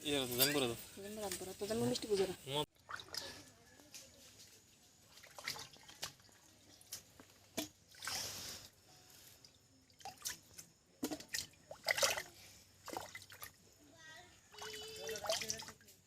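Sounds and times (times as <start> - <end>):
water dripping and trickling: 2.7 - 3.6, 5.0 - 8.7, 14.5 - 16.0.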